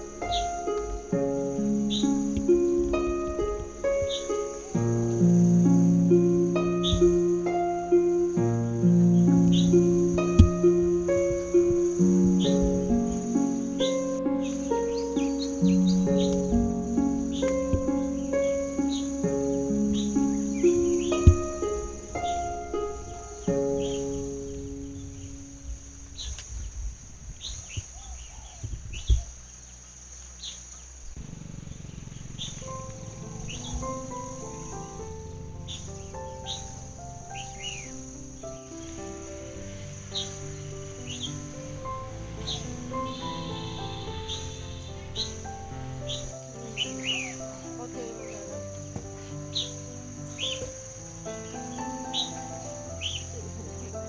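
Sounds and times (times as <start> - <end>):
plucked string and keyboard music: 0.0 - 26.0
low knocks: 0.0 - 27.0, 32.2 - 46.3
bird chirping: 0.0 - 54.0
loud thump: 6.7 - 7.3, 9.5 - 13.2, 16.1 - 18.8, 19.8 - 24.0.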